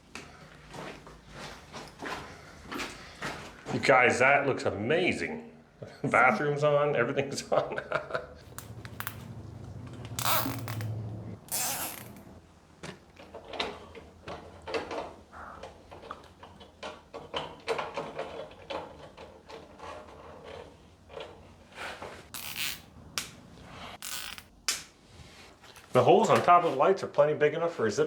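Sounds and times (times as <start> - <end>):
rustling and scraping: 8.4 - 26.9.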